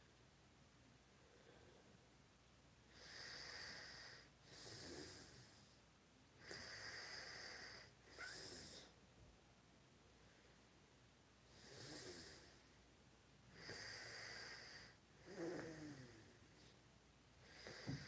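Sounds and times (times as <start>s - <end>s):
person snoring and breathing heavily: 11.6s - 12.6s, 13.6s - 16.6s.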